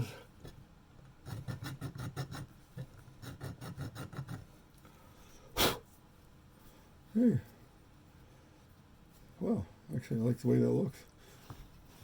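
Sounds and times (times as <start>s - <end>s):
hand file rasping: 1.2s - 2.6s, 3.2s - 4.5s.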